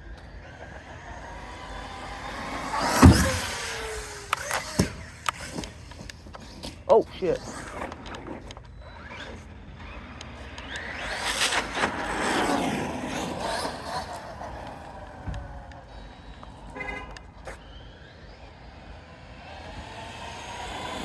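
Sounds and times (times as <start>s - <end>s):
rc car motor whining: 0.0s - 21.0s
horn-like honk: 16.7s - 17.2s.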